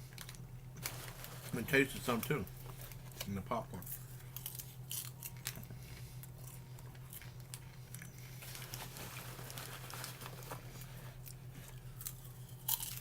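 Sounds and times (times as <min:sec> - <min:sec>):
paper bag crinkling: 0:00.8 - 0:02.3, 0:08.4 - 0:11.1.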